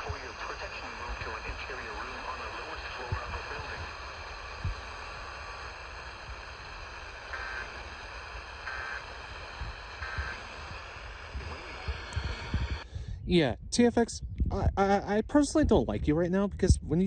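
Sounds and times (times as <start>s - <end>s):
warbling data bursts: 0.0s - 12.8s
hissy radio broadcast: 0.0s - 13.6s
faint steady tones: 0.0s - 14.0s
low rumble: 0.0s - 17.0s.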